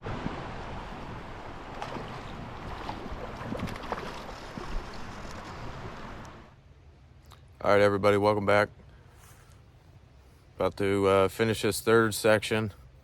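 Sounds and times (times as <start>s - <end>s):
creek water rushing over rocks: 0.0s - 6.6s.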